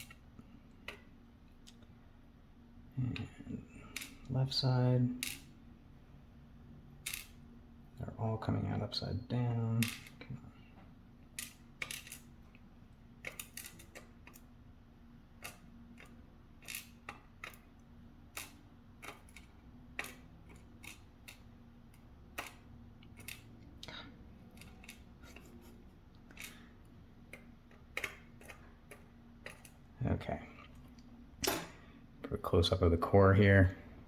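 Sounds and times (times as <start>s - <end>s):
small pins clicking and tapping: 0.0s - 1.8s, 9.8s - 10.3s, 11.2s - 14.5s, 15.4s - 29.9s
faint steady hum: 0.0s - 34.0s.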